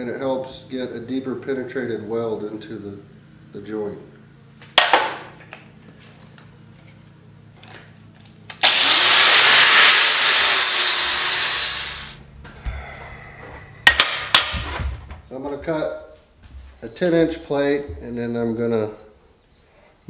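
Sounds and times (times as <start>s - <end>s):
power grinder grinding steel: 8.6s - 12.2s.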